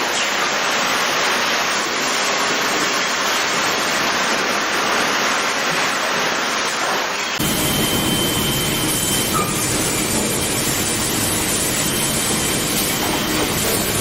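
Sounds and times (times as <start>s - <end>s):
sawmill machinery clatter: 0.0s - 14.0s
faint high whine: 7.4s - 14.0s.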